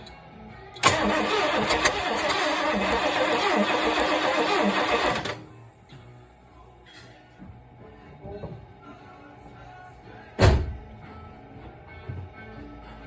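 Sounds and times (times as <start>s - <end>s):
car starter motor cranking: 0.8s - 5.6s.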